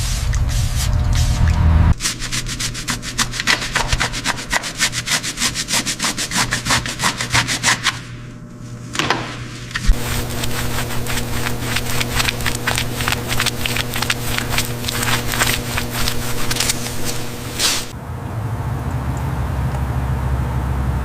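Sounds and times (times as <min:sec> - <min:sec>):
machine hum: 0:00.0 - 0:03.2, 0:08.0 - 0:21.0
short hissing strokes: 0:09.9 - 0:17.9.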